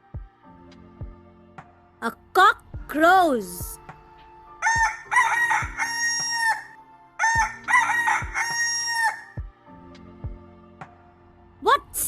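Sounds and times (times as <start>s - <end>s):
rooster crowing: 4.6s - 9.4s.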